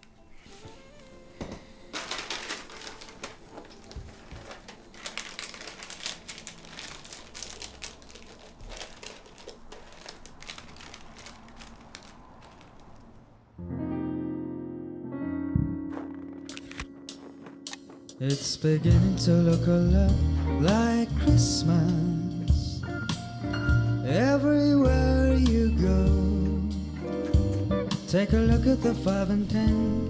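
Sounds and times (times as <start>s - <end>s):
crinkling and rustling: 0.0s - 13.4s, 15.9s - 18.7s.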